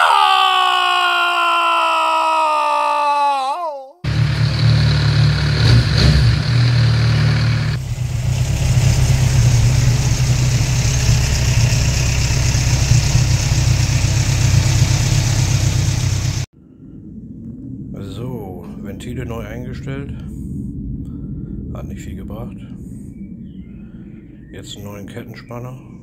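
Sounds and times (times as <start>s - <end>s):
motorcycle engine running: 4.1s - 16.5s.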